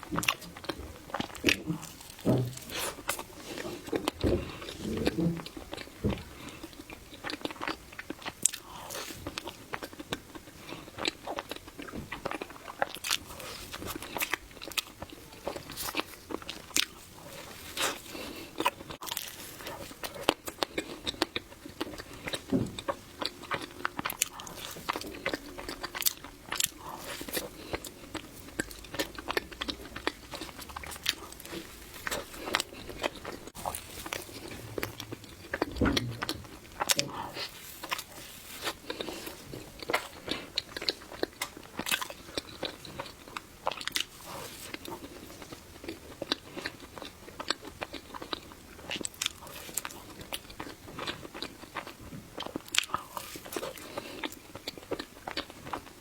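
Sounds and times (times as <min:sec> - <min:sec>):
wet chewing mouth clicks: 0:00.1 - 0:56.0
low thump: 0:34.4 - 0:36.6.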